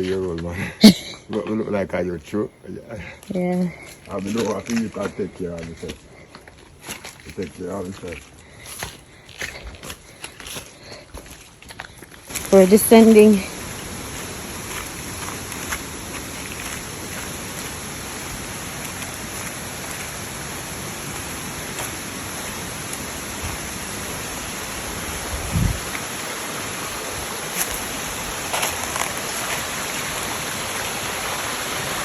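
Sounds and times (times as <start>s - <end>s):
rushing water: 10.5s - 32.0s.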